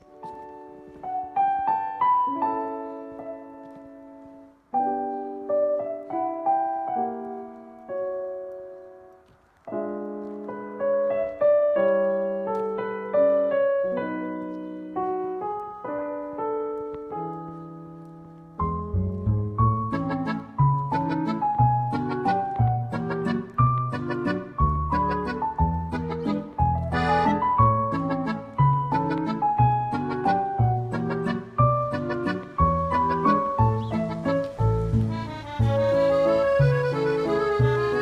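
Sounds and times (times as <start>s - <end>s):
slow solo piano: 0.0s - 38.0s.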